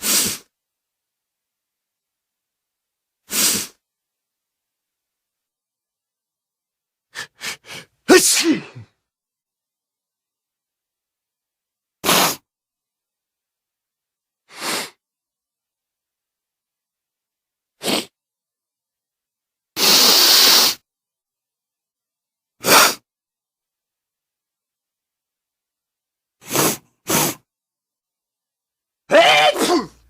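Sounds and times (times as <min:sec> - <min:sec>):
person sneezing: 0:00.0 - 0:00.5, 0:03.3 - 0:03.8, 0:07.2 - 0:08.9, 0:12.0 - 0:12.5, 0:14.5 - 0:15.0, 0:17.8 - 0:18.2, 0:19.8 - 0:20.8, 0:22.6 - 0:23.1, 0:26.4 - 0:27.5, 0:29.1 - 0:30.0
person coughing: 0:29.3 - 0:30.0.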